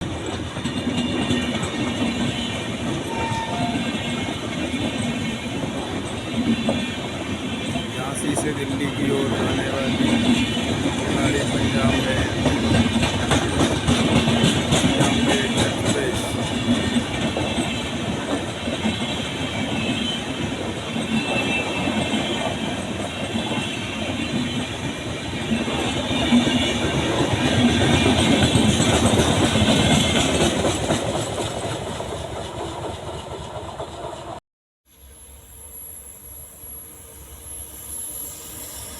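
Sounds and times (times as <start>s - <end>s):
train wheels clattering over rail joints: 4.0s - 23.5s, 25.6s - 34.4s.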